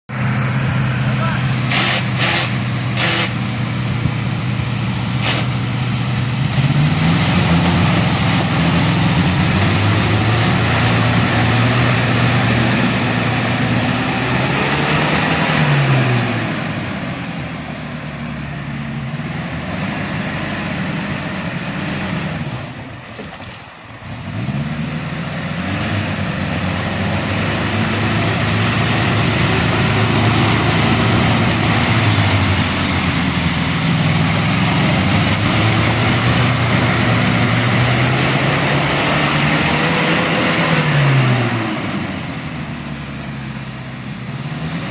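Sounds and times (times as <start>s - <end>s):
vehicle engine revving: 0.1s - 17.7s, 18.4s - 22.9s, 24.0s - 44.9s.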